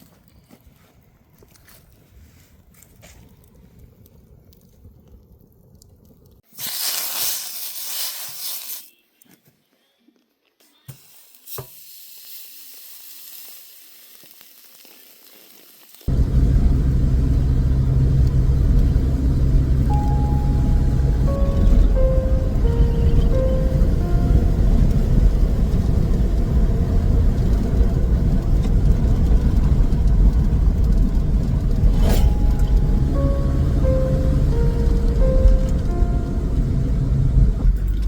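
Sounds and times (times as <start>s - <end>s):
meat sizzling on hot stone: 6.5s - 8.9s, 10.9s - 16.1s
music with heavy bass: 31.8s - 37.4s.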